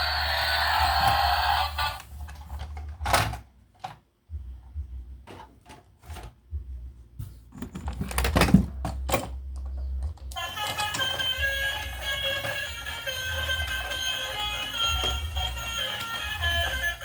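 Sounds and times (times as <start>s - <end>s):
steady low hum: 4.2s - 5.3s, 6.3s - 7.8s.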